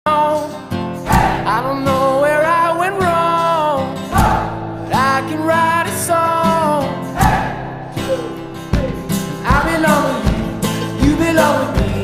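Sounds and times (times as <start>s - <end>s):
guitar: 0.1s - 12.0s
person singing: 0.1s - 12.0s
strong beats: 1.1s - 1.7s, 4.1s - 5.1s, 7.1s - 12.0s.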